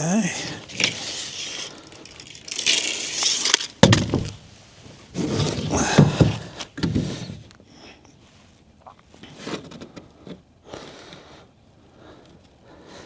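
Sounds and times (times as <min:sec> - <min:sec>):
scraping and rubbing of materials: 0:00.6 - 0:07.5.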